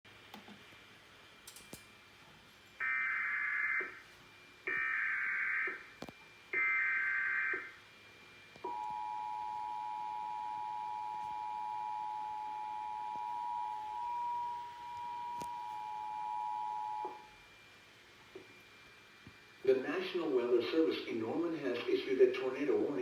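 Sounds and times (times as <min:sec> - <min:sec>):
two-tone attention signal: 0:08.7 - 0:17.2.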